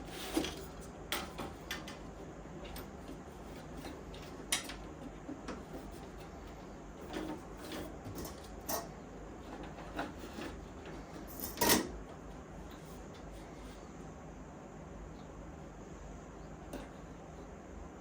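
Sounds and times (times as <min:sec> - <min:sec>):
low background hum: 0:00.0 - 0:18.0
plastic fan parts clicking and knocking: 0:00.3 - 0:12.0.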